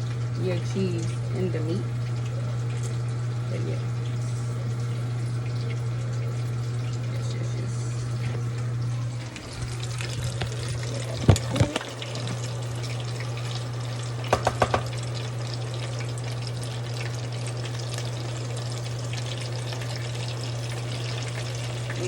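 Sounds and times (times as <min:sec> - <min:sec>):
constant low hum: 0:00.0 - 0:22.0
tortillas sizzling in hot oil: 0:08.3 - 0:22.0
loud knocks: 0:14.3 - 0:15.0.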